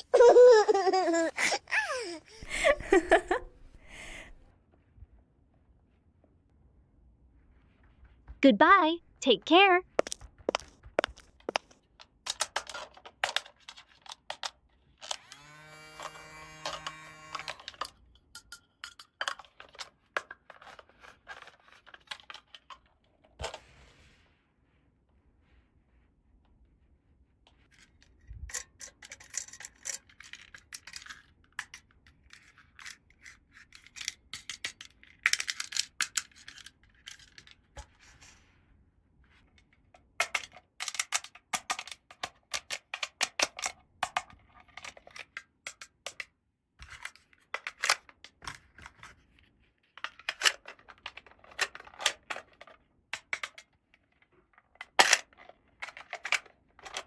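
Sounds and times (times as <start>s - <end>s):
plastic toy pieces clicking: 10.0s - 15.4s, 16.0s - 22.8s, 28.5s - 37.6s, 40.2s - 48.3s, 50.0s - 57.0s.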